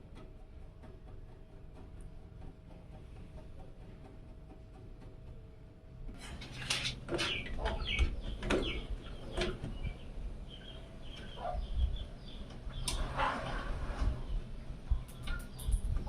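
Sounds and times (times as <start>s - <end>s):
bird calls: 7.1s - 16.0s.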